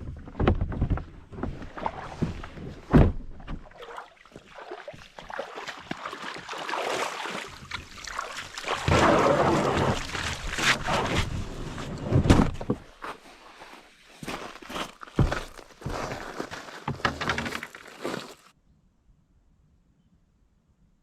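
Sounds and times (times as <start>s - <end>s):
paddle splashing in water: 1.5s - 12.0s
water washing along hull: 3.6s - 12.0s.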